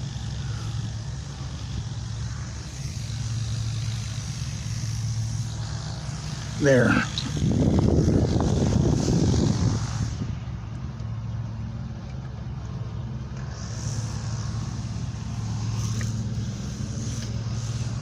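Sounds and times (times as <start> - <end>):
rush of noise: 0.0 - 10.7.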